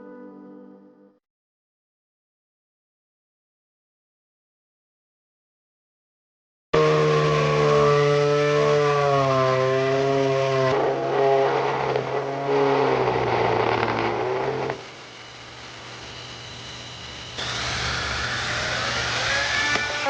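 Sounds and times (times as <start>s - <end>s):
oscillating multi-tool buzzing whine: 6.8s - 20.0s.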